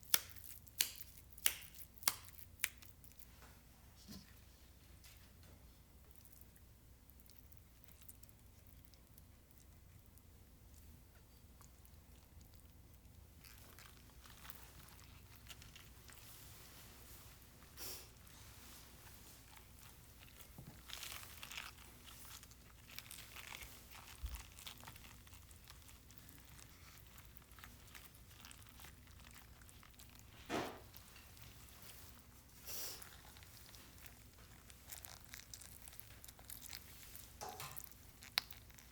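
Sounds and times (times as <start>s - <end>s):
soft rustling: 13.3s - 38.9s
crisp crunches: 13.4s - 16.6s, 18.0s - 38.9s.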